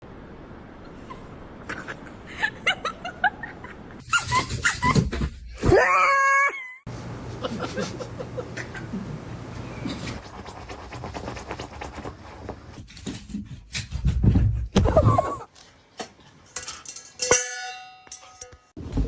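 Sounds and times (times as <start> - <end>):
dog yipping and barking: 4.0 - 5.0.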